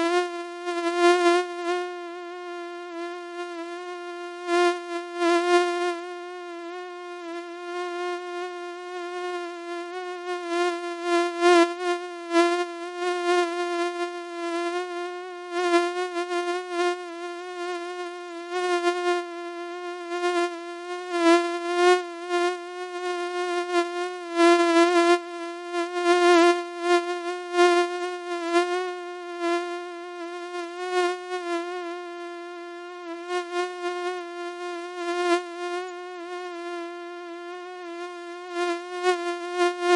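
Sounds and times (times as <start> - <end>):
mosquito buzzing: 0.0 - 39.9.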